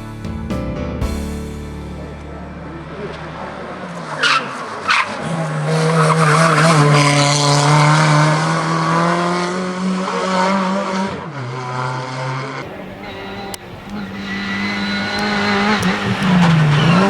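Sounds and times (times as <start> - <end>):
car engine at high revs: 2.2 - 17.0
tyres squealing: 12.6 - 17.0.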